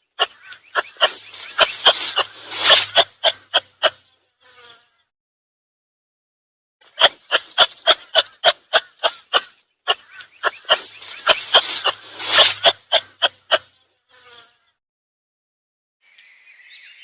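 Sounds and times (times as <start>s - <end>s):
animal call of sharp pulses: 0.2s - 4.8s, 6.9s - 14.5s.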